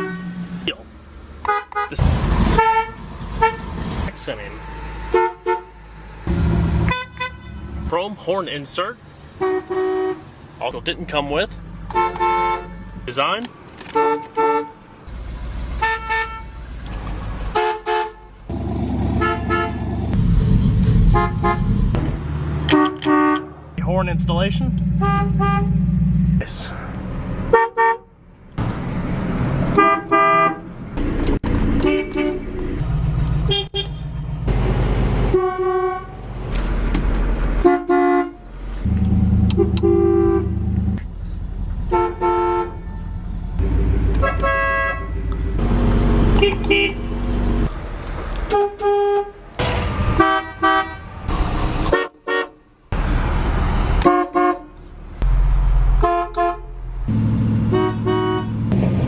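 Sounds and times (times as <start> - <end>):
car horns honking: 0.0 - 0.8, 1.4 - 7.8, 9.3 - 10.9, 11.9 - 14.8, 15.8 - 16.6, 17.5 - 20.1, 21.0 - 21.9, 22.6 - 26.4, 27.5 - 28.1, 29.7 - 30.7, 31.7 - 32.7, 33.4 - 34.3, 35.2 - 36.3, 37.6 - 41.0, 41.8 - 47.4, 48.4 - 52.7, 54.0 - 54.8, 55.9 - 59.0
low rumble: 23.8 - 27.4.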